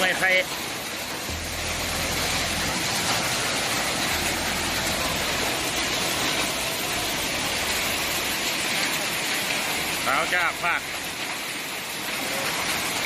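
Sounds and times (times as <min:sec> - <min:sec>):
heavy rain pouring: 0:00.0 - 0:13.0
low rumble: 0:01.3 - 0:08.3.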